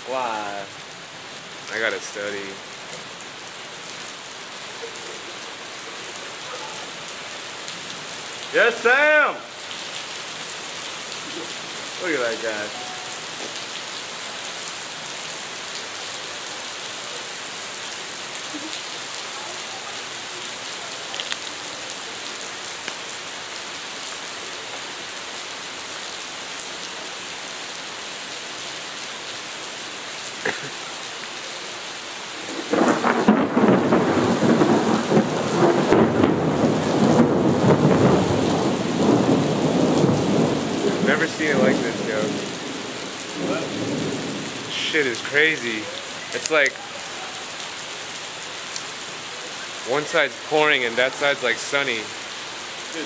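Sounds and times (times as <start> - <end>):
heavy rain pouring: 0.0 - 53.0.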